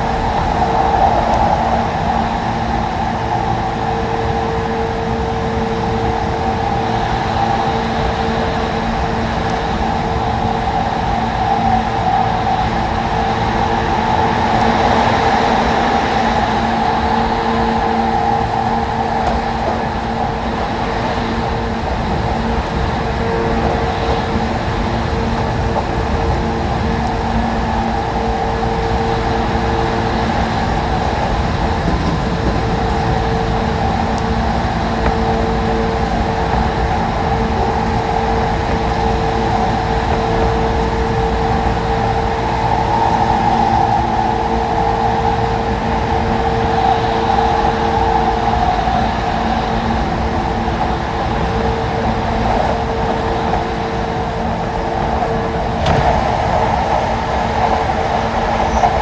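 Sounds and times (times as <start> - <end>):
electric train rumbling: 0.0 - 59.0
faint high whine: 48.1 - 59.0.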